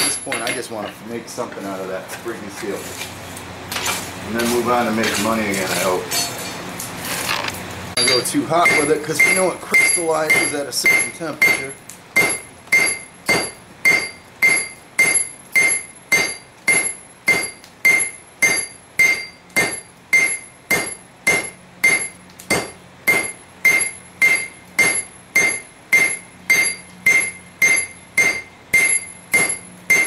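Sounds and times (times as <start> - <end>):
hammer striking steel on anvil: 8.0 - 30.0.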